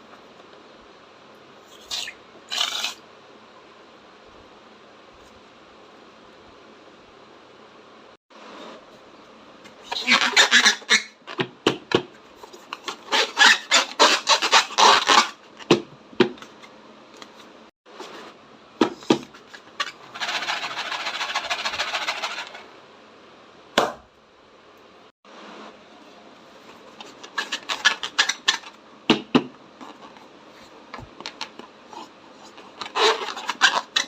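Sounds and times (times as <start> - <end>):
slime rubbing: 26.6 - 28.7, 29.8 - 34.0.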